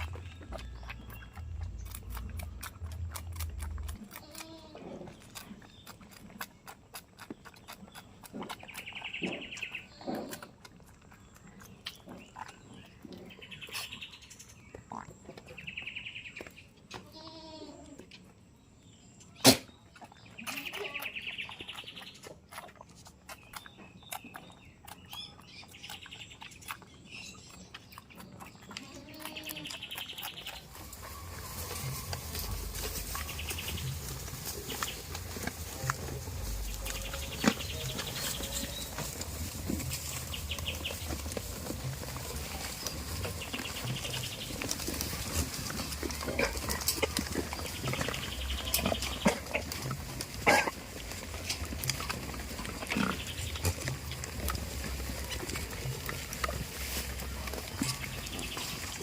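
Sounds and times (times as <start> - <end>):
small birds chirping: 0.0 - 59.0
goats bleating: 4.0 - 5.1, 17.0 - 18.0, 20.4 - 21.2, 28.8 - 29.8.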